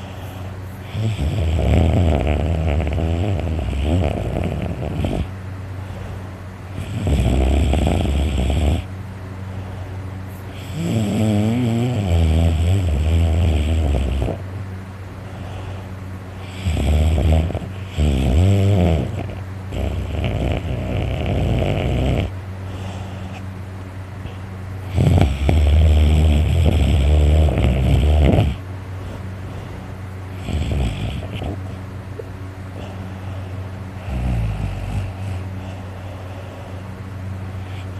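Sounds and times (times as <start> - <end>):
quiet breaths: 0.0 - 31.9, 32.7 - 37.9
steady low hum: 0.0 - 37.9
man snoring loudly: 0.8 - 5.3, 6.7 - 8.9, 10.5 - 14.4, 16.4 - 22.9, 24.9 - 28.6, 30.4 - 31.6, 34.0 - 35.5.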